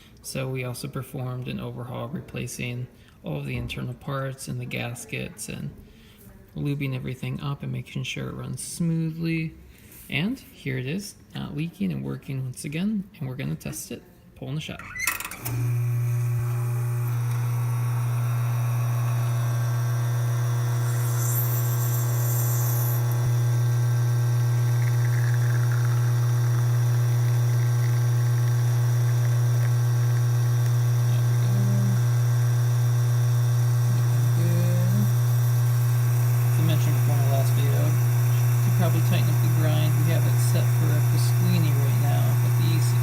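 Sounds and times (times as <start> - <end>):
espresso pump buzzing: 15.3 - 43.0.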